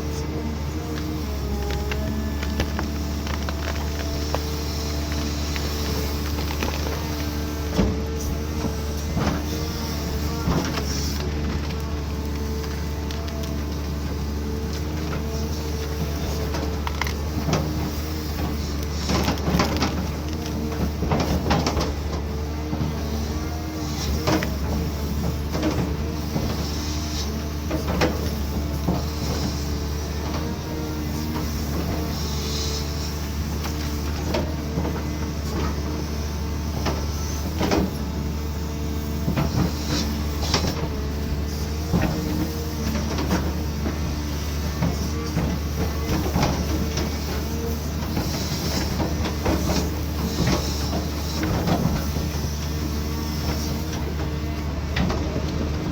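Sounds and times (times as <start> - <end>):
excavator diesel engine running: 0.0 - 55.9
sharp knocks and cracks: 1.0 - 8.0.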